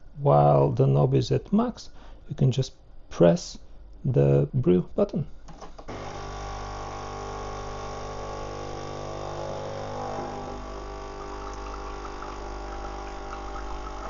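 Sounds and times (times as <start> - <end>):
espresso machine pump buzzing: 5.9 - 14.0.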